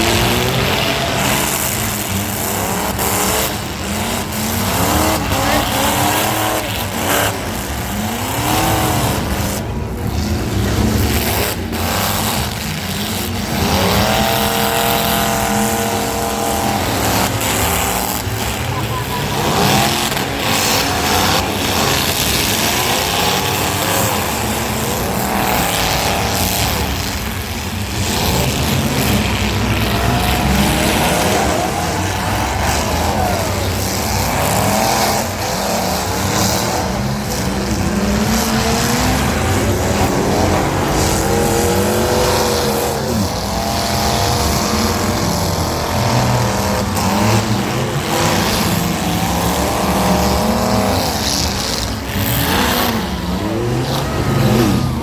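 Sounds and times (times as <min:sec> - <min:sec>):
car engines revving: 0:00.0 - 0:55.0.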